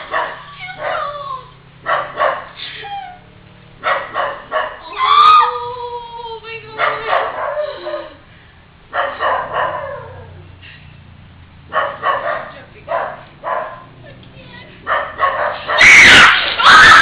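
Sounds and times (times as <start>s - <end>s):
dog barking and howling: 0.0s - 1.2s, 1.8s - 2.5s, 3.8s - 5.6s, 6.8s - 8.2s, 8.9s - 10.4s, 14.9s - 17.0s.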